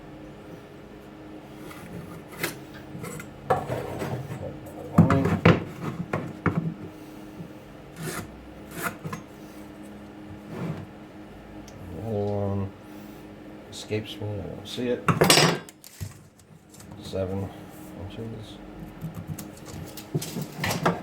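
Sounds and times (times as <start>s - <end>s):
wood scraping on workbench: 1.6s - 6.9s, 8.0s - 9.2s, 10.4s - 10.9s.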